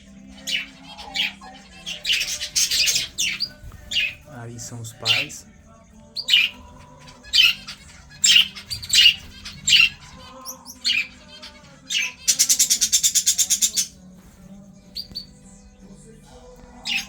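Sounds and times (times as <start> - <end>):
birds squawking: 0.0 - 17.0
rapid rattling bird call: 0.3 - 4.2, 6.2 - 13.9.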